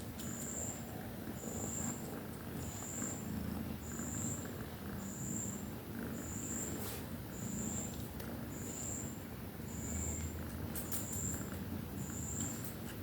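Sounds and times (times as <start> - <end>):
cat purring: 0.1 - 13.0.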